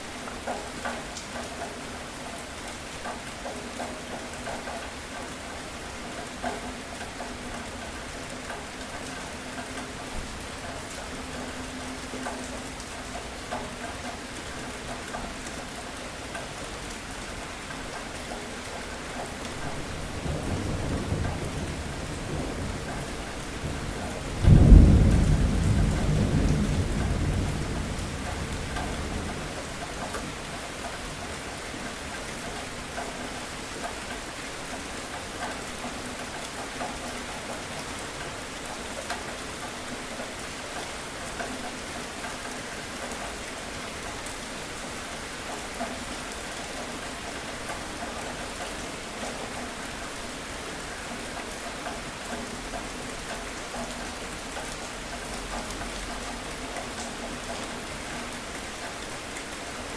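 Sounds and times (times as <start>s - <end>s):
steady rain: 0.0s - 59.9s
low thunder rumble: 20.1s - 28.6s.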